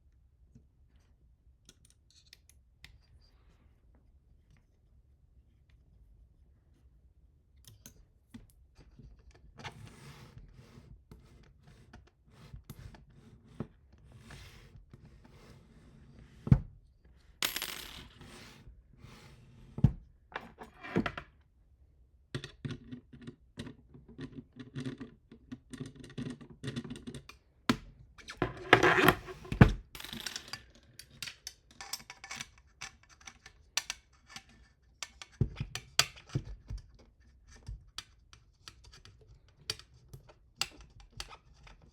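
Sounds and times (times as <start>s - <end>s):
small metal hardware clinking: 30.0s - 32.4s.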